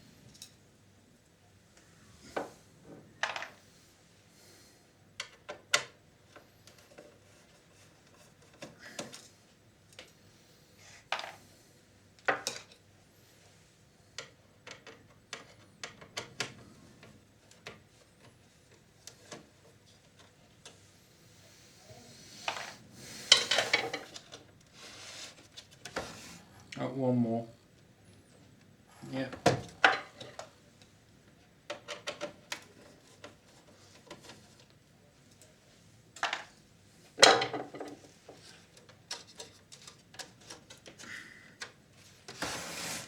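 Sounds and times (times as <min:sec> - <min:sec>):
clattering and scraping: 0:22.4 - 0:24.4.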